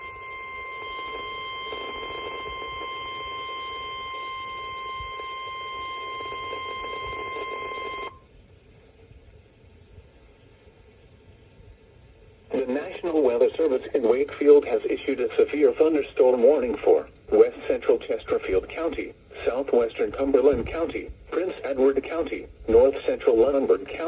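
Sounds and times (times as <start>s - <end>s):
high-pitched warning tone: 0.0s - 8.2s
radio static: 12.5s - 24.0s.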